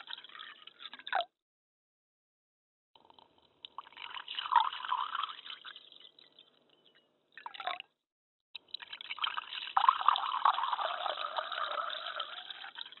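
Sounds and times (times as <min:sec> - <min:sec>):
water pouring into a glass: 0:00.0 - 0:01.3, 0:03.0 - 0:06.6, 0:07.4 - 0:07.9, 0:08.6 - 0:13.0.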